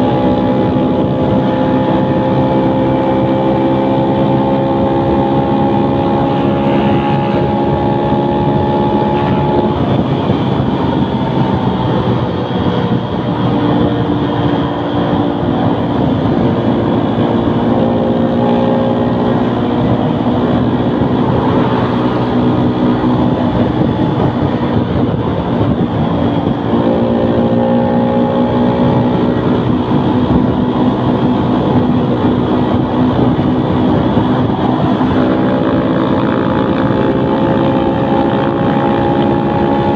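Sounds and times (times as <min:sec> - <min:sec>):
motorcycle engine running hard: 0:00.0 - 0:39.9
wind on microphone: 0:00.0 - 0:39.9.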